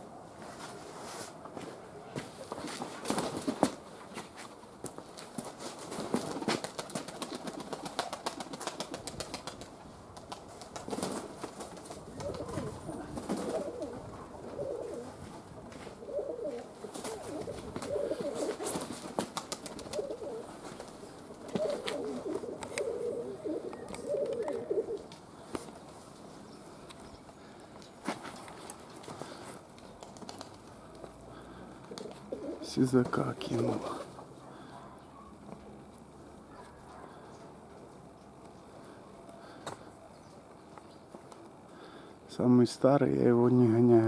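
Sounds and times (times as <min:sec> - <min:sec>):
pigeons cooing: 0:10.8 - 0:25.8, 0:28.6 - 0:32.9
sharp clicks and rustles: 0:27.8 - 0:31.2.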